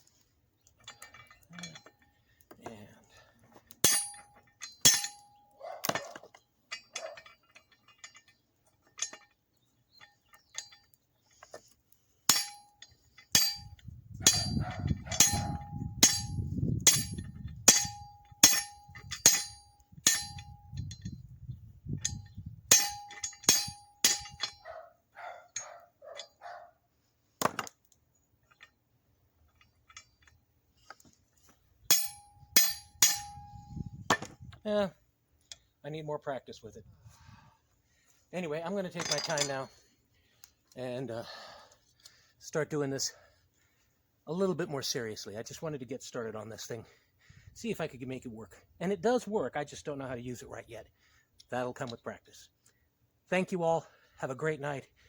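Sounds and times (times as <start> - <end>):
hammer striking metal: 3.8 - 6.0, 12.3 - 12.7, 13.3 - 20.6, 22.0 - 24.6, 31.9 - 33.5.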